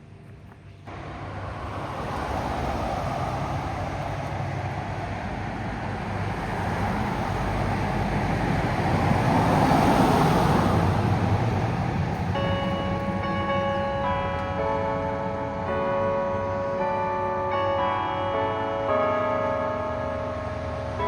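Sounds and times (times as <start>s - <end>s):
vehicle rushing noise: 0.9s - 13.0s.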